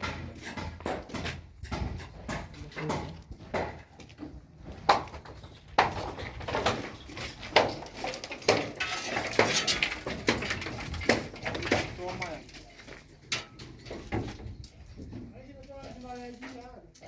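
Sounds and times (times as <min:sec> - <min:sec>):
scraping: 0:05.4 - 0:14.6.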